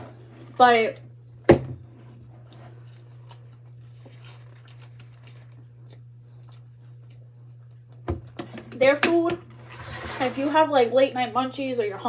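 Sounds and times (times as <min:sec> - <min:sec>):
steady low hum: 0:00.0 - 0:12.0
person chewing food: 0:02.5 - 0:08.0.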